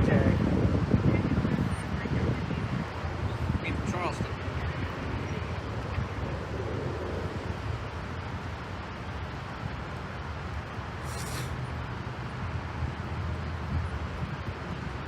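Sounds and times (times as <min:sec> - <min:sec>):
brief hiss: 0:11.0 - 0:11.6.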